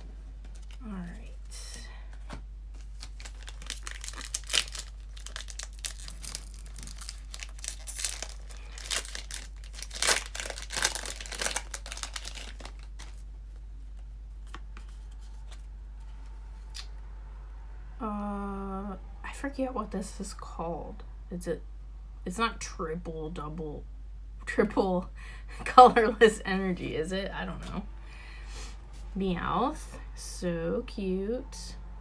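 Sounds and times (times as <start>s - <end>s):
cards rustling and clicking: 0.0s - 16.9s
foil wrapper tearing and crinkling: 2.8s - 13.2s.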